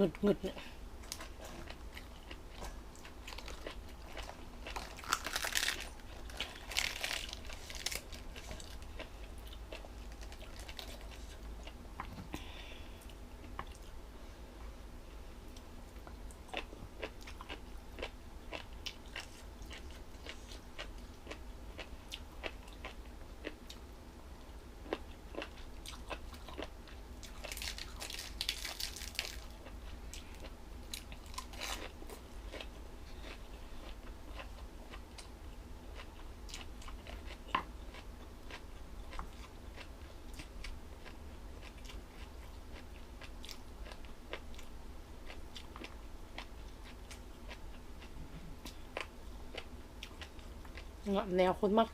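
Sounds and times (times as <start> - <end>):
crisp wet chewing crunches: 1.0 - 11.8, 24.9 - 35.3.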